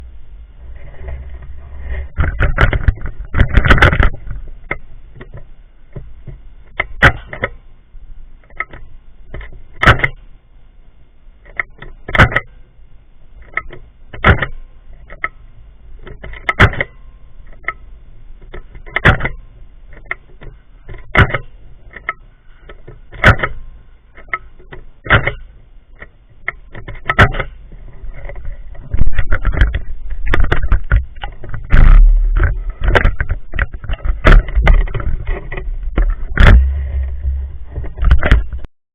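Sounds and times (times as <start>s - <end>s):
rattling handling noise: 0.7s - 7.6s, 16.0s - 38.7s.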